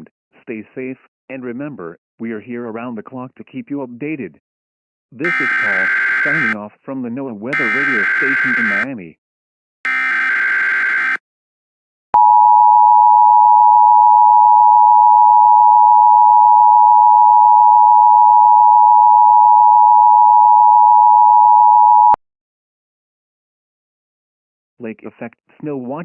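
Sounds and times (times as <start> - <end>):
digital data tones: 5.2 - 6.6, 7.6 - 8.9, 9.9 - 11.2
two-tone attention signal: 5.2 - 6.6, 7.6 - 8.9.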